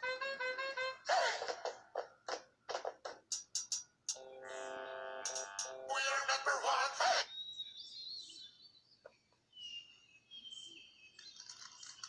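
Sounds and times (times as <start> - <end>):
high bird-like chirping and whistling: 7.2 - 8.8, 9.5 - 11.5.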